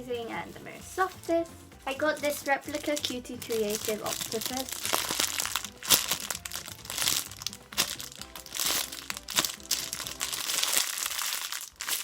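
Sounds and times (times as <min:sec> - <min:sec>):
background music: 0:00.0 - 0:12.0
packaging crinkling: 0:02.7 - 0:12.0.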